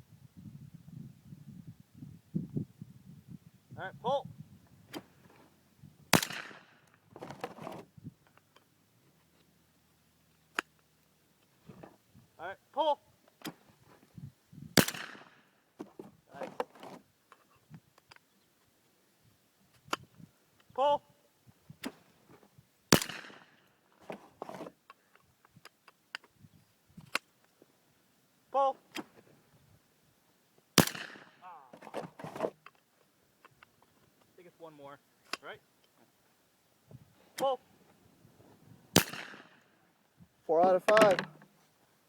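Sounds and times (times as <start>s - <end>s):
shotgun shot with echo: 6.1s - 6.8s, 14.8s - 15.4s, 22.9s - 23.5s, 30.8s - 31.4s, 39.0s - 39.6s.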